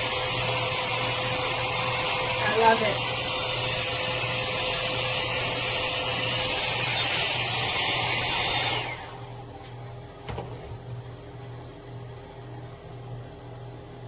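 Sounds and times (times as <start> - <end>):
hot air brush running: 0.0 - 9.5.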